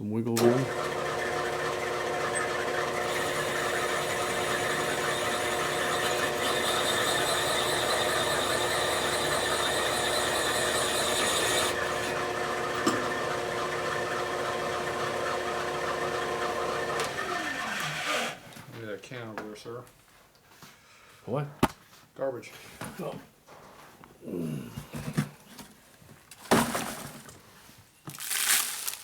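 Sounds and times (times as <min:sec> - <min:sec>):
machine spindle running: 0:00.4 - 0:18.4
cutter hissing on metal: 0:03.0 - 0:12.1.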